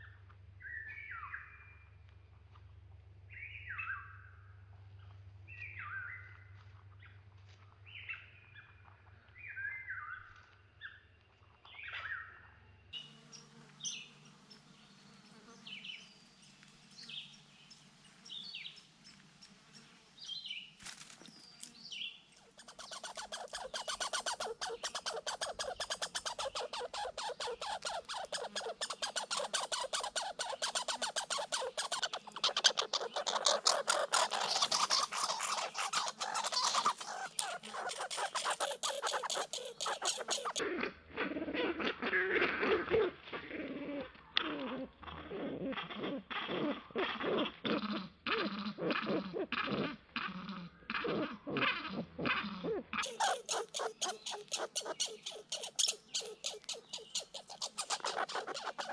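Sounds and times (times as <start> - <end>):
small birds chirping: 12.9 - 40.6, 53.0 - 58.9
squirrel chattering rattle: 22.4 - 40.6, 53.0 - 58.9.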